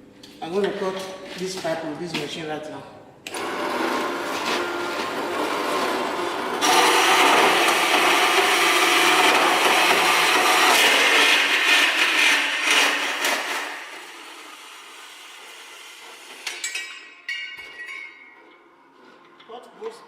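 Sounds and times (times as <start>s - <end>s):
power saw grinding through metal pipe: 3.4s - 16.4s.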